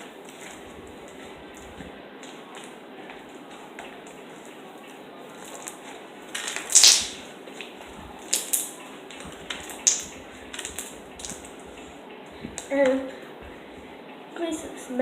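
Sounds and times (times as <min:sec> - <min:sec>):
slime squished by hand: 0:05.4 - 0:11.5.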